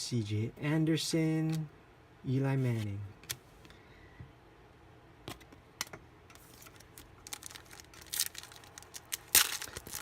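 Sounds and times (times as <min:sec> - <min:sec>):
light rustling of card packs: 0:02.6 - 0:03.6, 0:06.3 - 0:10.0.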